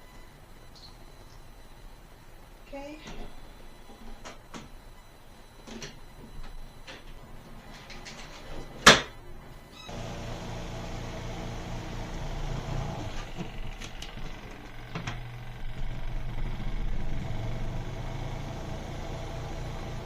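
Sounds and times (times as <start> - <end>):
spin-dryer motor humming: 9.4 - 20.0.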